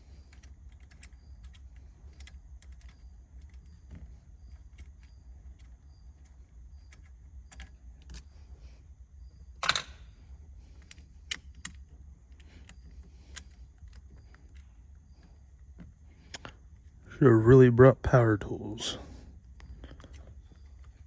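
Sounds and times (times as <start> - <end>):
hand tools clicking on metal: 0.0 - 8.3
steady low hum: 0.0 - 21.0.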